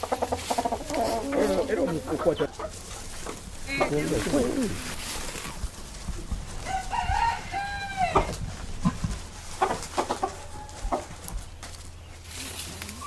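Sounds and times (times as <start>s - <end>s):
rooster crowing: 6.6s - 8.4s, 10.3s - 11.2s.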